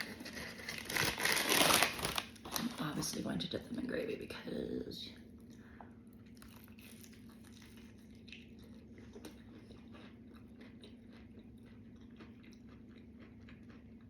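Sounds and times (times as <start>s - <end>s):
crunching and chewing: 0.0s - 2.8s, 5.4s - 14.0s.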